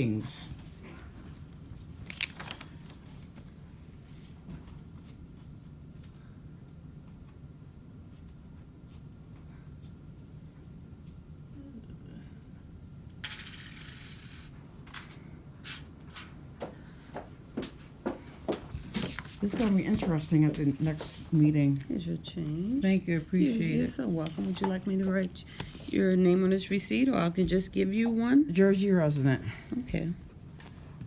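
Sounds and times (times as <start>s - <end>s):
low room hum: 0.0s - 31.0s
coins clinking: 13.2s - 15.2s.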